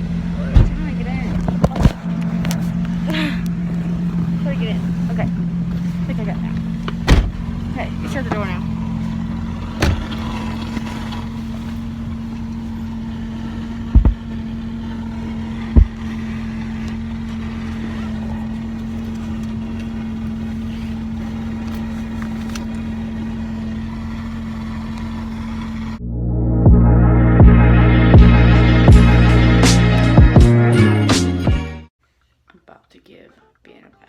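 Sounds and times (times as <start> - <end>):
car engine idling: 0.0 - 26.1
loud thumps: 0.5 - 2.1, 6.9 - 8.6, 9.7 - 10.4, 13.8 - 14.3, 15.6 - 16.1.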